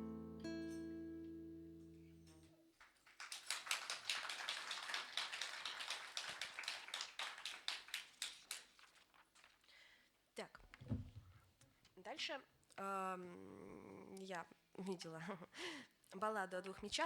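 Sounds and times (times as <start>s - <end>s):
audience applauding: 2.8s - 9.1s.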